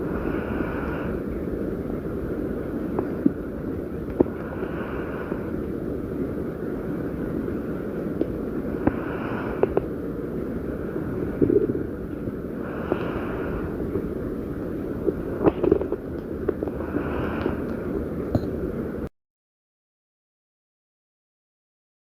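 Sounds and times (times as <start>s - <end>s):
stomach growling and gurgling: 11.2s - 12.2s, 14.9s - 17.8s.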